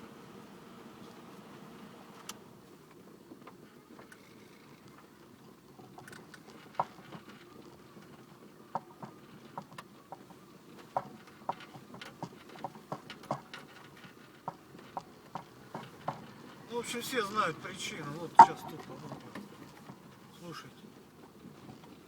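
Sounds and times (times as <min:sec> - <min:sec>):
road noise inside car: 0:14.6 - 0:22.0
steering rack knocking: 0:18.3 - 0:19.2.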